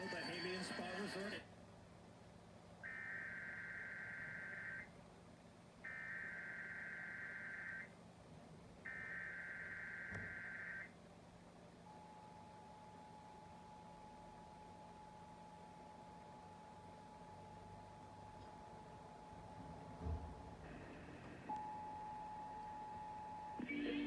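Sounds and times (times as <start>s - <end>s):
digital data tone bursts: 0.0s - 1.3s.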